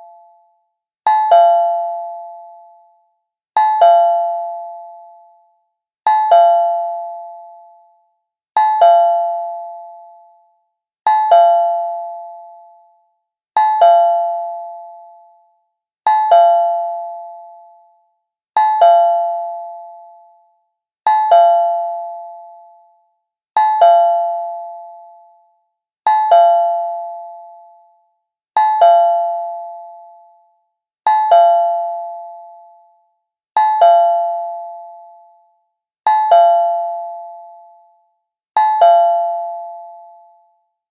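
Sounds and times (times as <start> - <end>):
cartoon doorbell ding-dong chime: 38.6 - 39.9.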